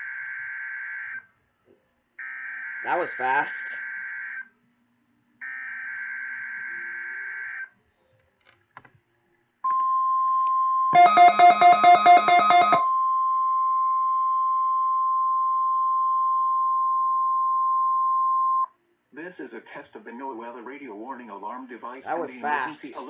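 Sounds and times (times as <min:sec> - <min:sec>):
rapid pulsing beep: 0:10.9 - 0:12.9
steady alarm tone: 0:10.9 - 0:17.2.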